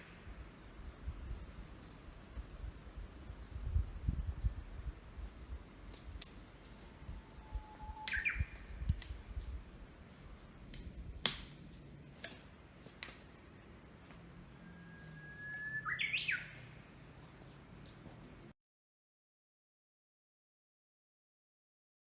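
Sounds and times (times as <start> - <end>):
wind rumble on microphone: 0.0 - 11.9
songbirds singing: 6.9 - 18.5.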